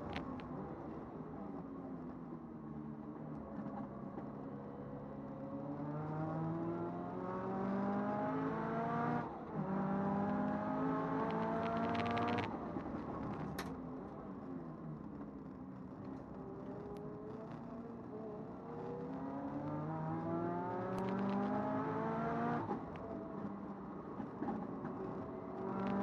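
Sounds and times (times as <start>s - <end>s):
car engine accelerating: 5.8s - 12.5s, 18.7s - 22.8s.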